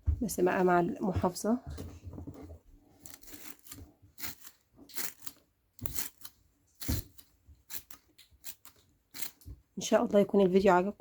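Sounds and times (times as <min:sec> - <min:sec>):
small objects rustling and clicking: 0:02.2 - 0:09.6.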